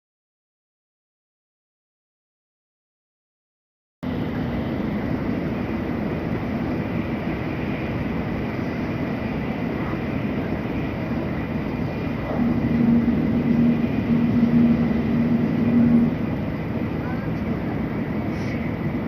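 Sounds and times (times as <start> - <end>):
faint steady whine: 4.0 - 19.0
train running rumble: 4.0 - 19.0.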